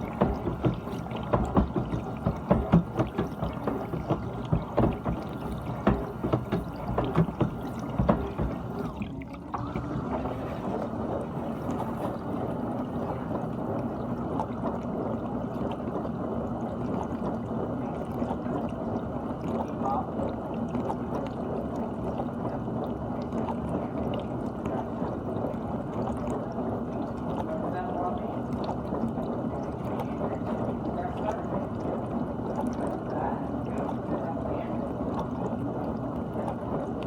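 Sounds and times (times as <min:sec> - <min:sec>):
dishwasher water spraying and sloshing: 0:00.0 - 0:14.2.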